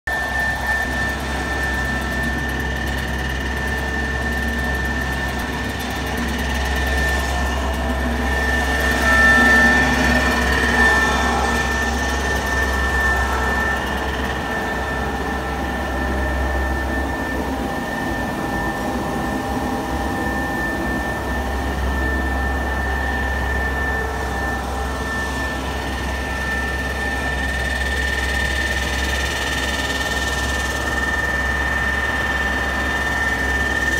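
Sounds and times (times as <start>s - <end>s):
grinding mill droning with whine: 0.1s - 33.9s.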